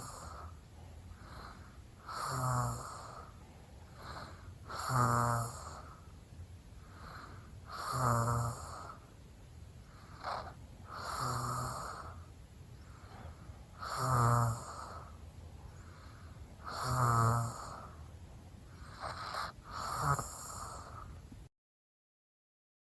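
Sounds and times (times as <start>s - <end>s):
rasping snores: 0.0s - 0.6s, 1.2s - 6.0s, 6.9s - 9.1s, 10.0s - 12.2s, 12.9s - 15.2s, 15.9s - 18.0s, 18.7s - 21.2s
soft snort: 0.0s - 6.1s, 6.8s - 9.1s, 10.0s - 18.1s, 18.7s - 21.2s.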